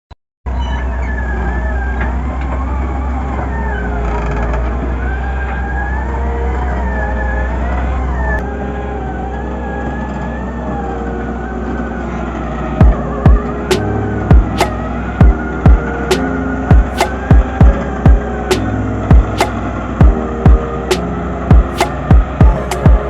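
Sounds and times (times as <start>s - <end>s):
excavator engine drone: 0.8s - 23.0s.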